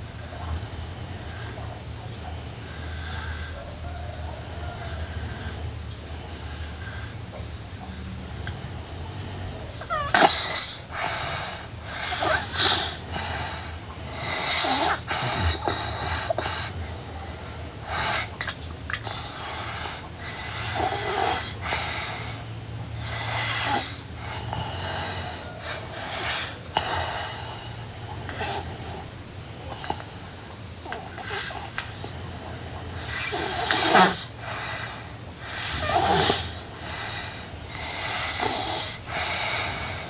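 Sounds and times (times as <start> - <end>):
girl snoring: 8.4 - 16.8, 17.8 - 22.4, 23.0 - 30.2, 30.9 - 40.0.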